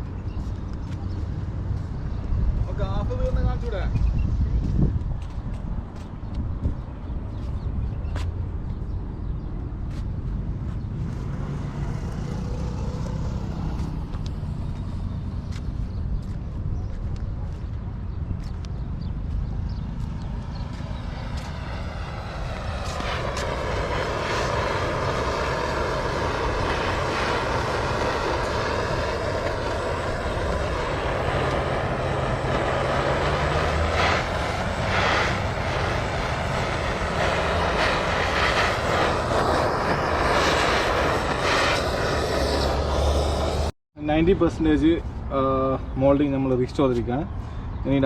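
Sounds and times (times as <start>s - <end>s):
low rumble: 19.0s - 43.8s
gas torch flame hissing: 21.3s - 43.7s.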